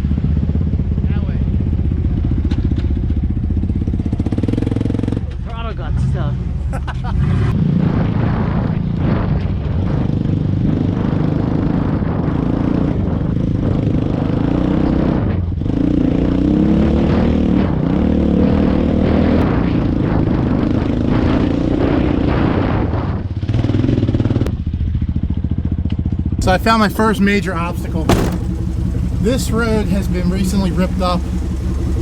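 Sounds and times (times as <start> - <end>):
truck engine running: 26.4 - 32.0.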